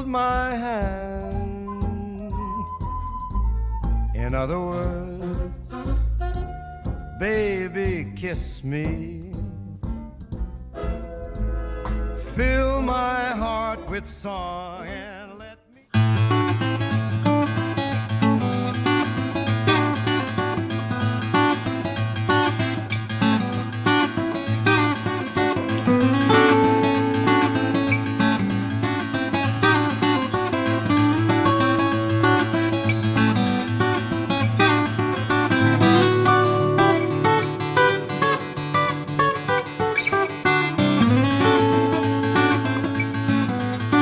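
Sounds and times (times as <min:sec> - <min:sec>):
acoustic guitar music: 0:15.9 - 0:44.0.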